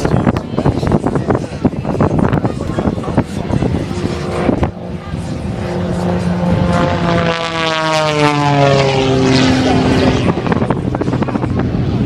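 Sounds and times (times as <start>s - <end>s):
propeller airplane flying past: 0.1s - 12.0s.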